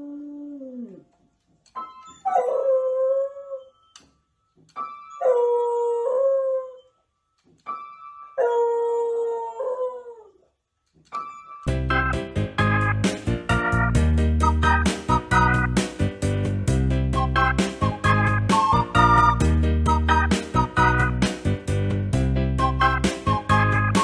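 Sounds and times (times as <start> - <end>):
dog howling: 0.0 - 1.0
busy music: 11.1 - 24.0
keyboard notes: 11.1 - 24.0.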